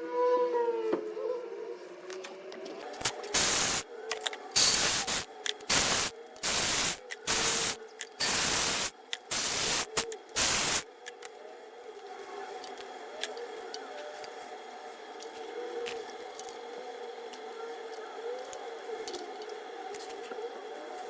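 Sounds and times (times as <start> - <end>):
hissing spray bursts: 3.0 - 3.9, 4.6 - 10.8.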